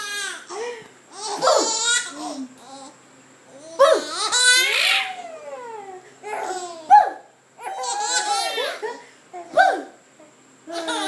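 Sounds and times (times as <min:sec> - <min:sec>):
babies laughing and squealing: 0:04.0 - 0:06.9, 0:07.6 - 0:09.1, 0:10.7 - 0:11.0.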